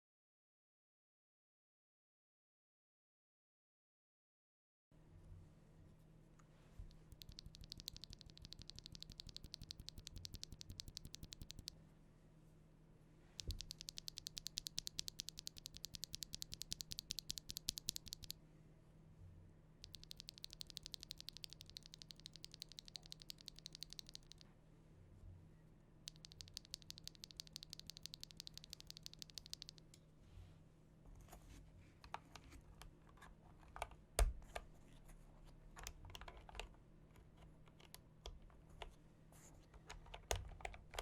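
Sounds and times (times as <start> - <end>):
typing on a mechanical keyboard: 6.9 - 11.7, 13.4 - 18.3, 19.8 - 24.4, 26.1 - 29.9, 35.8 - 38.9, 39.8 - 41.0.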